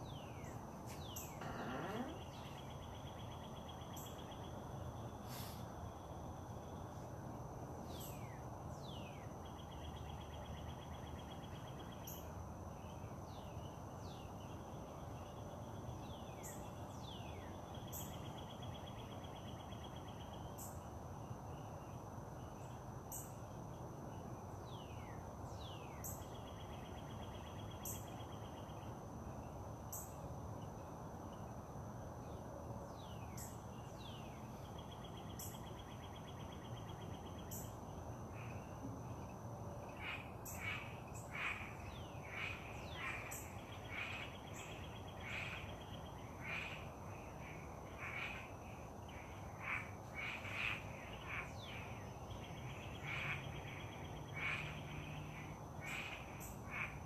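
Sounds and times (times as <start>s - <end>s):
high insect drone: 0.0s - 57.0s
birds calling: 0.1s - 2.9s
bird repeating a short call: 1.3s - 2.5s.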